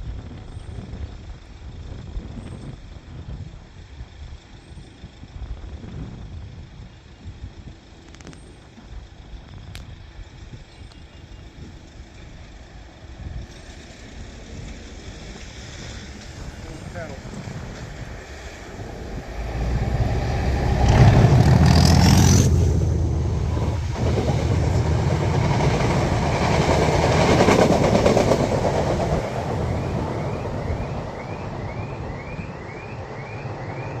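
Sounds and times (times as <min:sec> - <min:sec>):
diesel locomotive engine: 0:00.0 - 0:34.0
car alarm chirping: 0:29.6 - 0:34.0.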